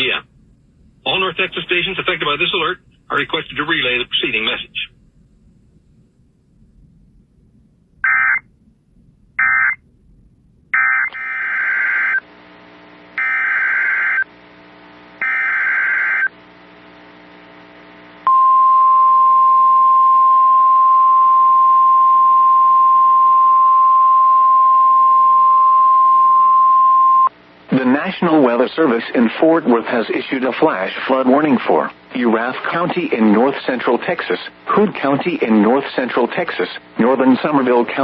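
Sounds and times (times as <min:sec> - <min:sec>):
buzzy alert data tones: 0:08.0 - 0:08.5, 0:09.4 - 0:09.8, 0:10.8 - 0:12.2.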